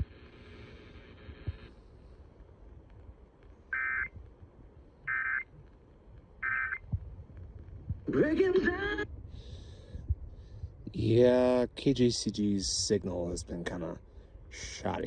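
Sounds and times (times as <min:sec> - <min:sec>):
buzzy data tone bursts: 0:03.7 - 0:04.2, 0:05.0 - 0:05.5, 0:06.4 - 0:06.9
faint hiss: 0:09.2 - 0:15.0.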